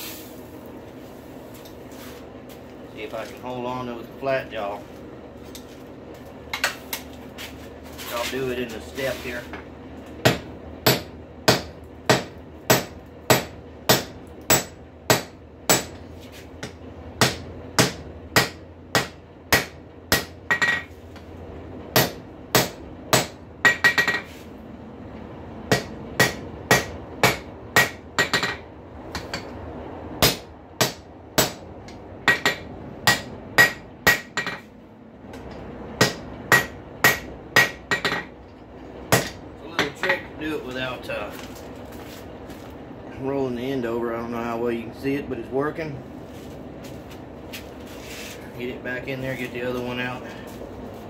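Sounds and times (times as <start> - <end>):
hammer striking steel on anvil: 10.2 - 16.0, 16.6 - 20.9, 22.0 - 24.3, 25.7 - 29.5, 30.2 - 34.7, 35.4 - 38.3, 39.1 - 40.3.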